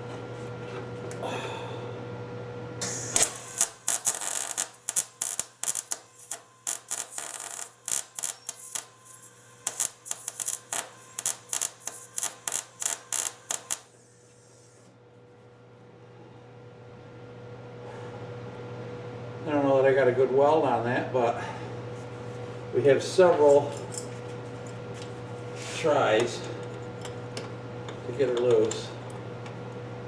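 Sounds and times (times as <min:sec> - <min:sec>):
arc welder crackling: 0:02.8 - 0:14.0.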